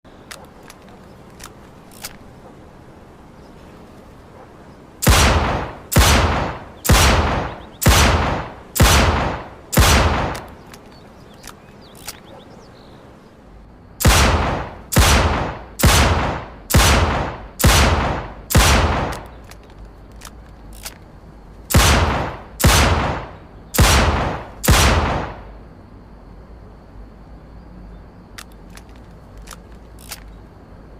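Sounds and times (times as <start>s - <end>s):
faint clicks: 0.2s - 2.6s, 10.2s - 12.5s, 18.5s - 21.8s, 28.3s - 30.6s.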